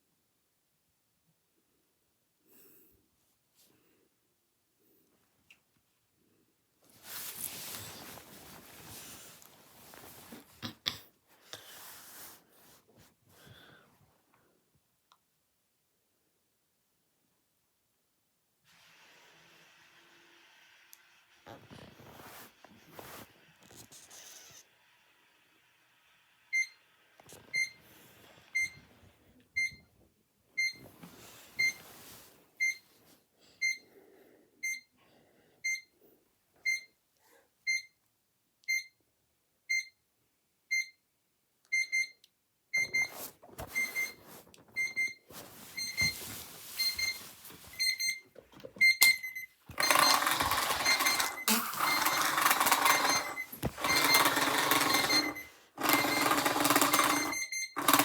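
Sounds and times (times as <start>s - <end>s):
electronic alarm beeping: 46.8s - 48.2s, 48.8s - 58.0s.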